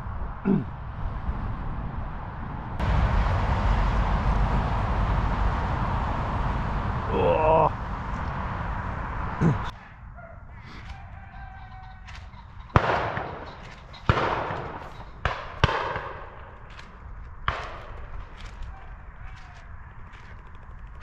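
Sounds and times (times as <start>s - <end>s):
shotgun shots with echo: 12.8s - 16.8s, 17.5s - 18.4s.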